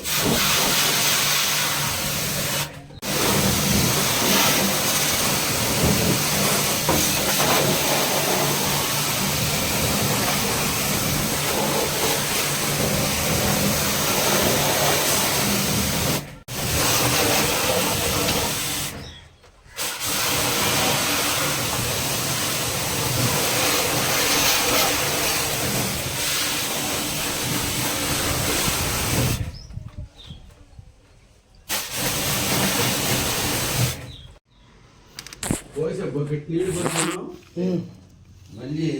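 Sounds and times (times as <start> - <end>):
pressure washer pump running: 0.0 - 19.0, 19.8 - 29.4, 31.7 - 34.2
water jet hissing: 0.0 - 19.1, 19.7 - 29.5, 31.7 - 34.3.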